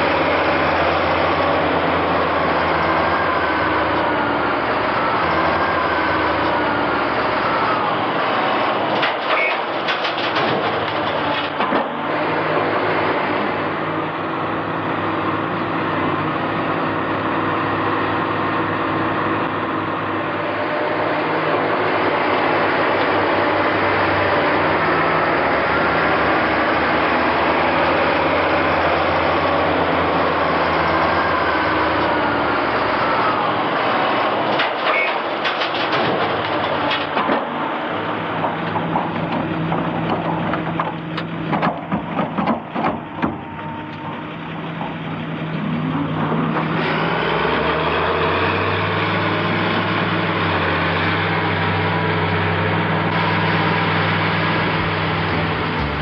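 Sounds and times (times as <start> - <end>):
diesel machinery running: 0.0 - 56.0
metallic clanks and knocks: 8.9 - 12.0, 34.5 - 37.6, 38.3 - 43.4.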